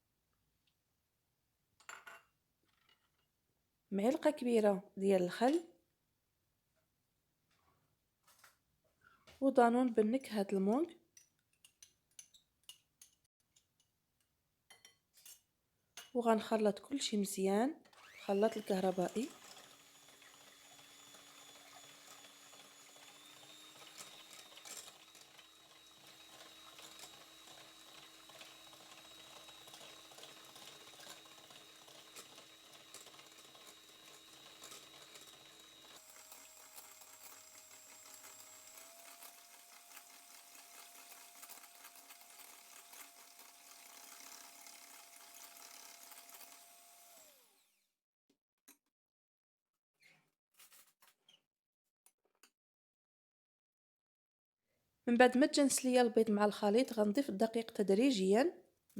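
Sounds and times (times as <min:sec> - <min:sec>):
faint electric hand mixer whine: 0:17.9 - 0:47.9.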